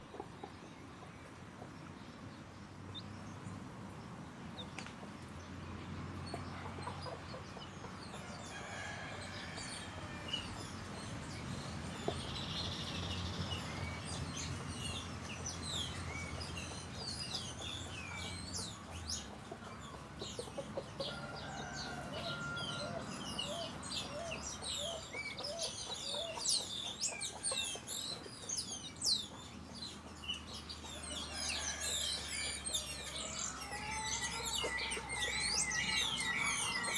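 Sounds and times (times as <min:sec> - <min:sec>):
small birds chirping: 0:00.0 - 0:36.9
chickens clucking: 0:13.3 - 0:36.9.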